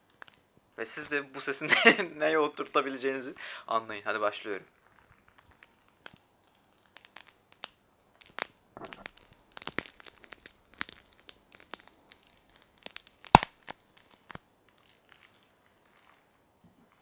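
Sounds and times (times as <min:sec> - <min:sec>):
pepper snapping with crisp cracks: 0:05.3 - 0:14.4.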